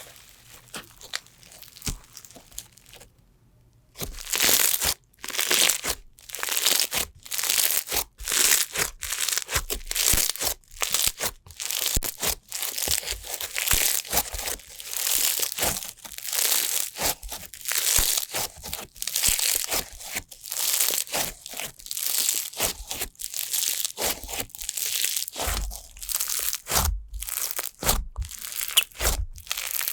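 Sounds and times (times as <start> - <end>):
slime squelching and popping: 0.0 - 3.1, 4.0 - 29.9.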